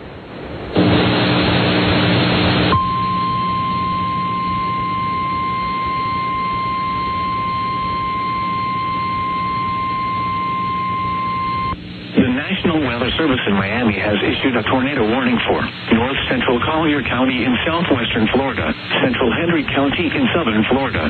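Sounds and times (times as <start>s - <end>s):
low hum: 0.7s - 19.8s
radio receiver hiss: 0.8s - 8.8s, 11.6s - 21.0s
steady high alarm tone: 2.7s - 11.8s.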